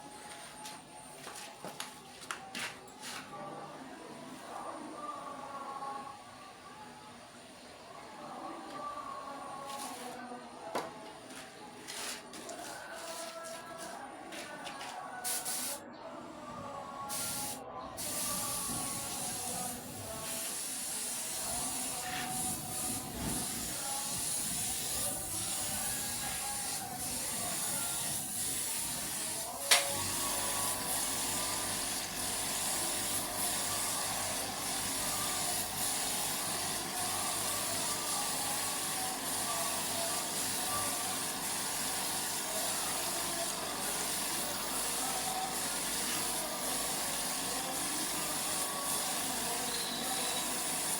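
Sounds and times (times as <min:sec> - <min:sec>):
spray hiss: 0:15.3 - 0:15.8, 0:17.1 - 0:50.9.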